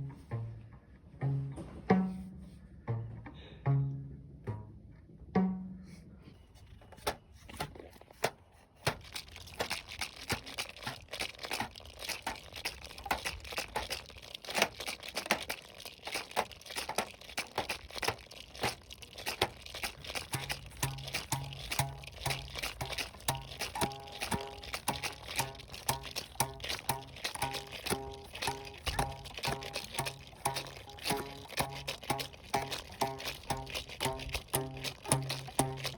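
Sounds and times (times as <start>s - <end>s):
low plucked notes: 0.0s - 6.2s
crackling and rattling: 6.7s - 35.9s.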